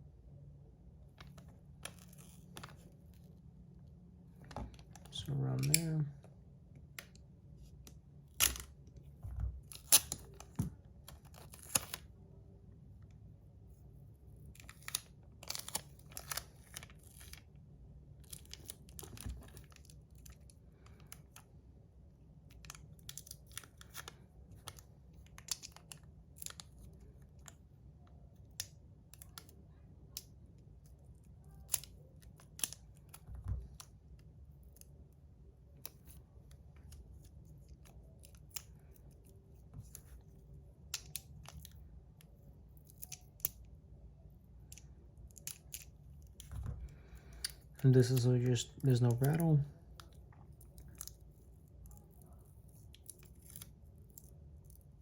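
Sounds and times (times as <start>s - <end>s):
tape crinkling: 9.6s - 12.1s, 14.4s - 17.5s, 18.2s - 21.4s, 44.6s - 55.0s.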